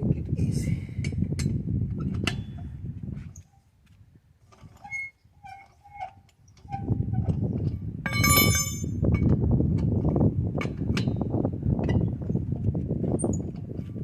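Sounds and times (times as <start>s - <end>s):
bright ringing clink: 8.1s - 8.9s
wrench metallic rattle: 8.1s - 9.0s.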